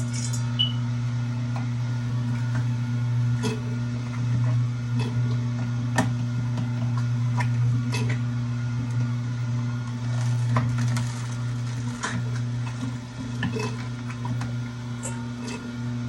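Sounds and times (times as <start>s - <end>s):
dishes and utensils clinking: 0.0s - 0.7s.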